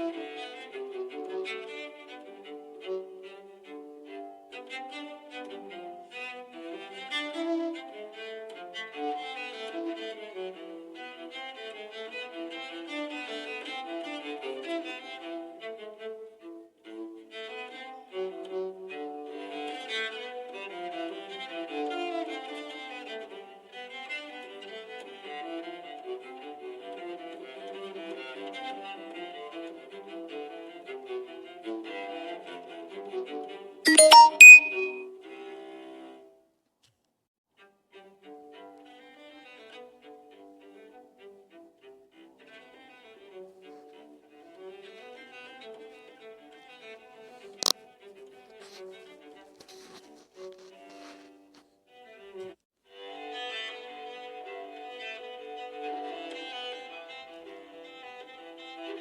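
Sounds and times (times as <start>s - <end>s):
phone ringtone on bowed strings: 33.9s - 35.0s.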